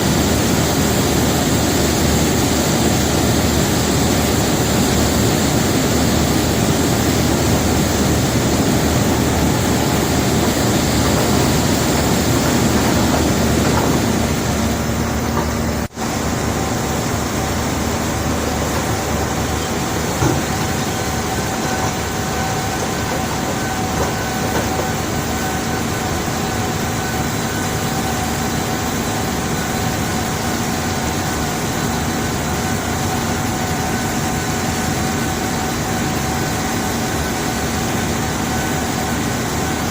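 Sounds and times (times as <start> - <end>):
heavy machinery rumbling: 0.0 - 39.9.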